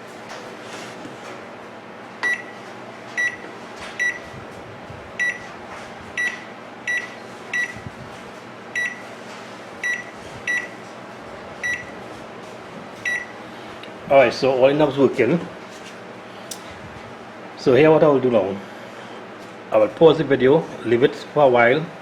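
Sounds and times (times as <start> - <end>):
steady low hum: 0.0 - 22.0
microwave keypad beeps: 2.2 - 2.6, 3.2 - 3.4, 4.0 - 4.3, 5.2 - 5.5, 6.2 - 7.8, 8.8 - 9.0, 9.8 - 10.8, 11.6 - 11.9, 13.0 - 13.4.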